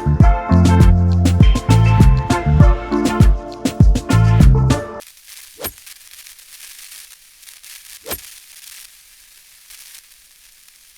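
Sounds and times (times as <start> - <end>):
upbeat background music: 0.0 - 5.0
soft low thumps: 0.1 - 4.7
faint steady hiss: 5.0 - 10.9.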